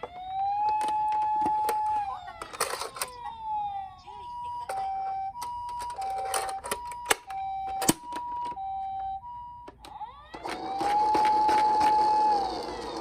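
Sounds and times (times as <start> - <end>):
siren holding steady tone: 0.0 - 13.0
toy two-tone siren: 0.0 - 13.0
plastic toy clicks: 10.3 - 13.0.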